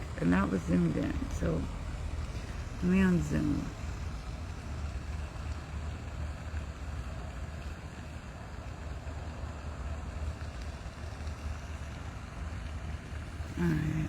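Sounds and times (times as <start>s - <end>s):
car low rumble: 0.0s - 8.8s
faint hiss: 0.0s - 14.0s.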